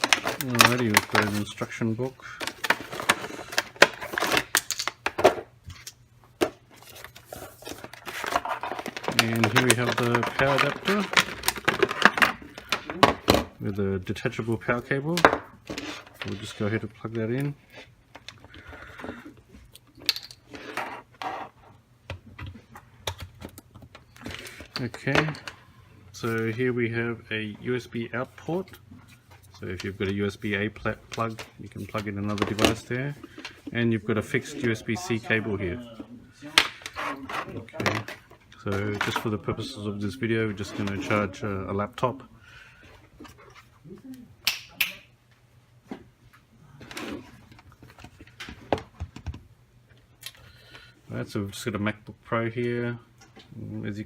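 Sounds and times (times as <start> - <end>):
cable rustling: 0.0 - 4.9, 6.7 - 13.0.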